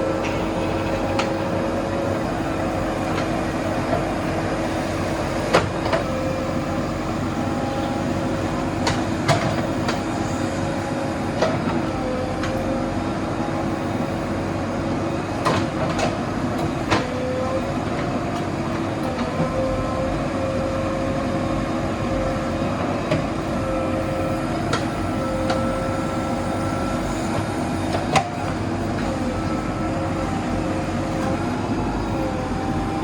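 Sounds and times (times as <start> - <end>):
hydraulic whine: 0.0 - 15.9
diesel engine running: 0.0 - 33.0.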